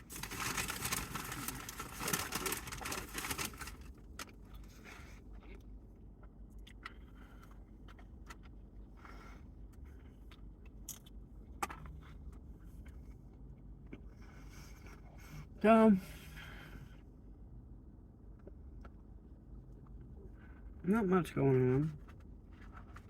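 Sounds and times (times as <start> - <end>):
food wrapping rustling: 0.0 - 5.0
low rumble inside a car: 0.0 - 23.0
soft chewing: 0.6 - 15.6, 18.2 - 20.8.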